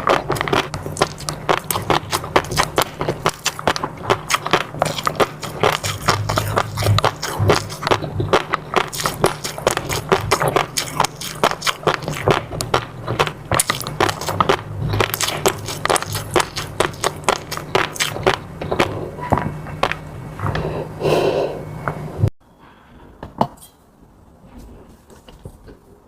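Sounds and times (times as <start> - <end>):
crackling pops and wet clicks: 0.0 - 19.0
close chewing and biting: 0.0 - 20.6.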